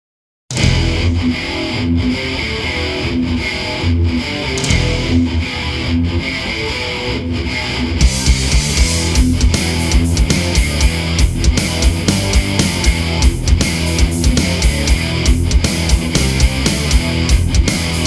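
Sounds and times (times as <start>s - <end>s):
distorted electric guitar riff: 0.5s - 18.0s
drum hits: 8.0s - 18.0s.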